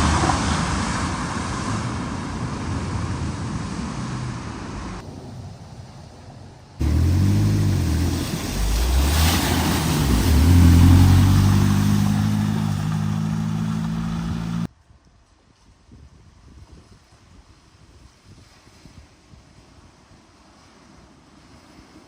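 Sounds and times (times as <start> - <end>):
vehicle engine revving: 6.8 - 14.7
water splashing: 6.8 - 14.7.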